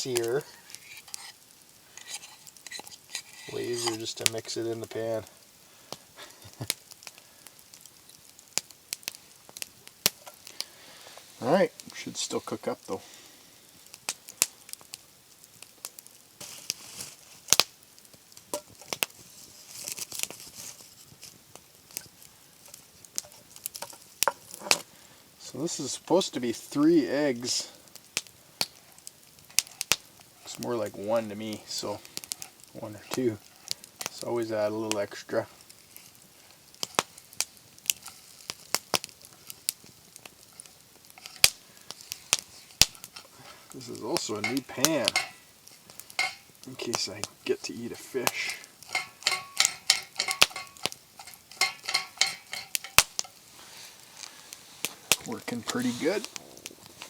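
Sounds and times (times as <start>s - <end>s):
utensil tapping camp cookware: 0.0s - 5.2s, 22.7s - 26.3s, 28.6s - 35.3s, 40.5s - 53.5s
food sizzling: 0.0s - 57.0s
utensil tapping a pan: 2.0s - 4.1s, 43.9s - 53.4s.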